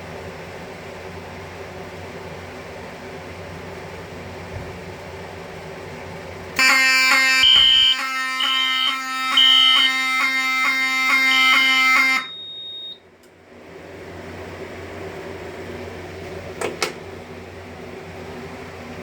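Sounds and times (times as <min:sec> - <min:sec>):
fire alarm horn: 0:06.6 - 0:13.0
high pulsing beep: 0:06.6 - 0:13.0.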